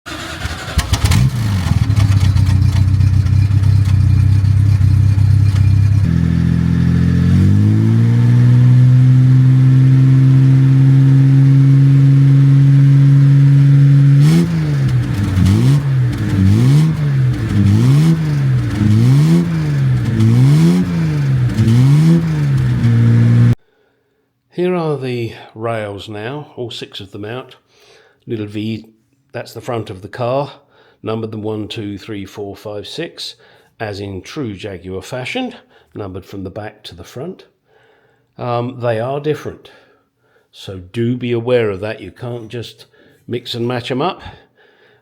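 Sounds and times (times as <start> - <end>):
car engine starting and idling: 0.0 - 23.6
car engine revving: 0.1 - 23.6.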